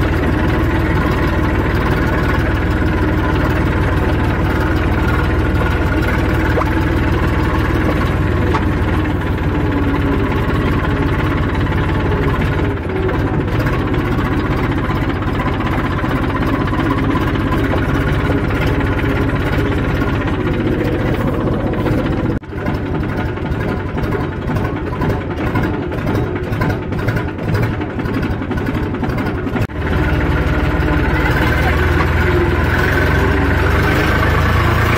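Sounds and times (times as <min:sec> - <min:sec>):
tractor diesel engine running: 0:00.0 - 0:34.9.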